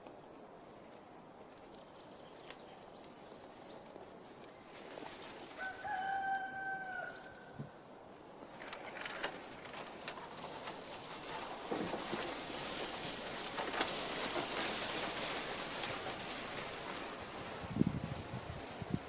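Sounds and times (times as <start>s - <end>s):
faint clicks and rustles: 0.0s - 5.6s, 8.1s - 19.0s
rooster crowing: 5.6s - 7.6s.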